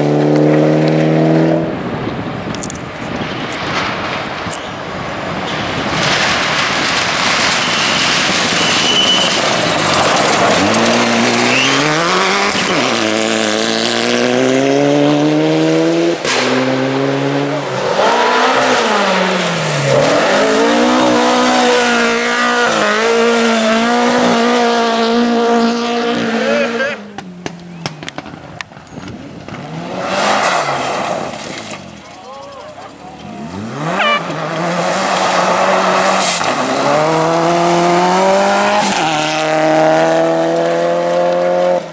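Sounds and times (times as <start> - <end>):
rally car engine revving: 0.0 - 2.0, 5.2 - 28.4, 29.1 - 41.9
road and tyre noise: 0.0 - 41.9
sharp crack: 2.5 - 13.1, 16.2 - 17.0, 27.0 - 32.1, 33.1 - 41.5.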